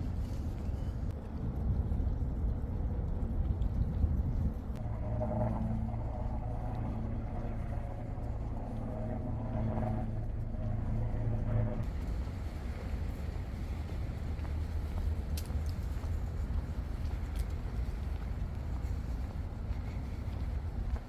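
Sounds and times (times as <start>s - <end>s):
low outdoor rumble: 0.0s - 21.0s
engine droning: 4.8s - 15.6s.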